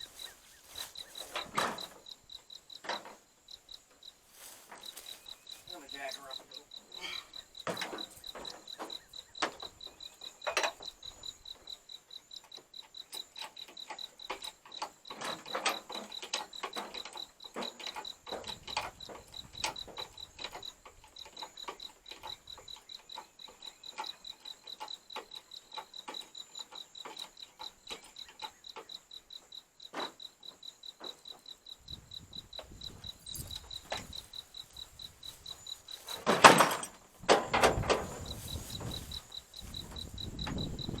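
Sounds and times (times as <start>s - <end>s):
crickets chirping: 0.0s - 41.0s
metal clicks and knocks: 7.6s - 11.0s, 12.5s - 29.0s, 32.5s - 41.0s
loud metal clank: 36.1s - 38.3s.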